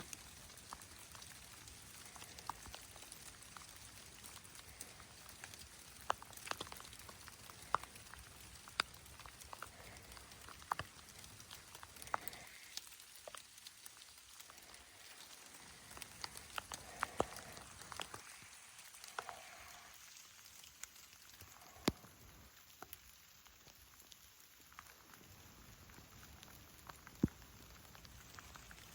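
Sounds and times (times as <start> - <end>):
water drops pattering: 0.0 - 20.0
faint steady hiss: 0.0 - 28.9.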